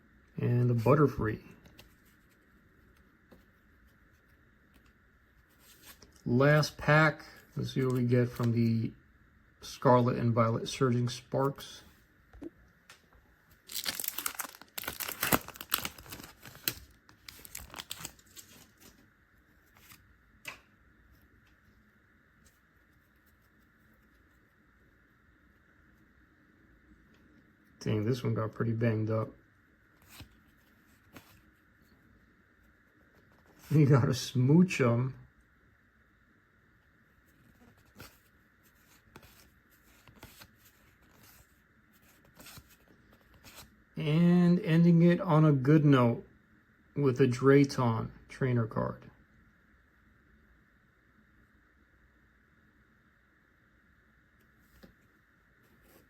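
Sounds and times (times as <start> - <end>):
trading cards rustling: 5.5 - 8.7, 13.6 - 19.0, 37.6 - 43.7
foil wrapper tearing and crinkling: 13.6 - 18.9.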